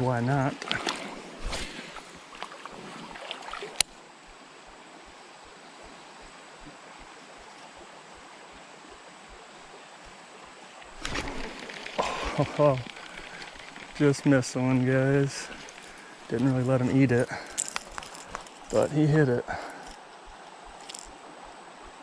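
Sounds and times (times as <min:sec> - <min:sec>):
creek rushing: 0:00.0 - 0:05.6, 0:06.3 - 0:22.0
fish splashing at surface: 0:11.0 - 0:14.0.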